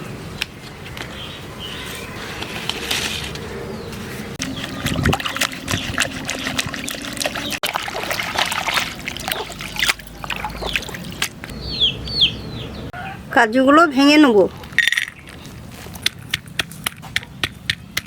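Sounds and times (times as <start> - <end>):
leaves handled with clicks and rustles: 1.8 - 4.8
bird chirping: 3.4 - 7.6, 9.4 - 13.9
water trickling and splashing: 4.4 - 11.5.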